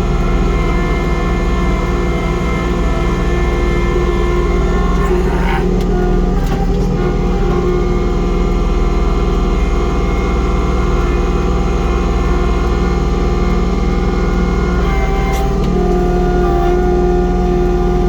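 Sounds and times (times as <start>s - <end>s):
snowblower working through snow: 0.0s - 18.0s
tractor diesel engine running: 0.0s - 18.0s.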